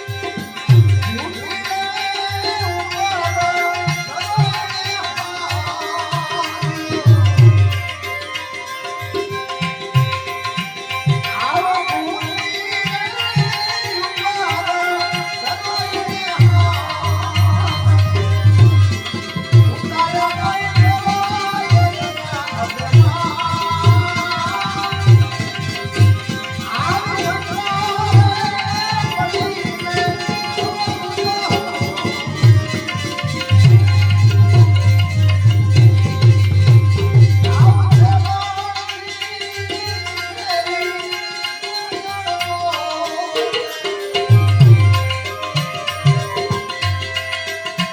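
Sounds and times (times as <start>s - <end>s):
tabla playing a steady rhythm: 0.0s - 47.9s.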